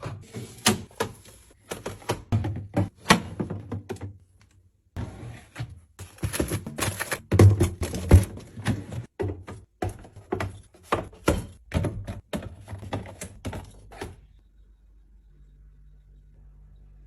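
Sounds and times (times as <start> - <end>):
faint low hum: 14.4 - 17.0.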